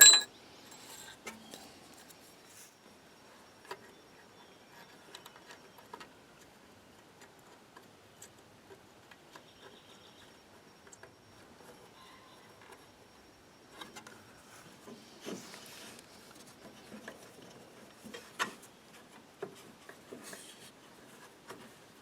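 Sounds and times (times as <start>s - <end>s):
metal parts and tools clicking: 0.0s - 0.3s.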